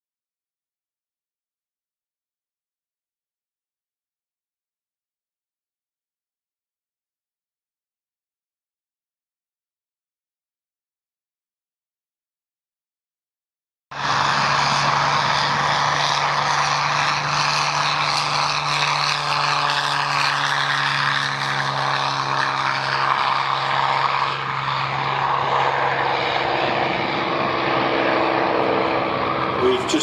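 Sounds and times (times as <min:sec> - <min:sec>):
propeller aircraft droning: 0:13.9 - 0:30.0.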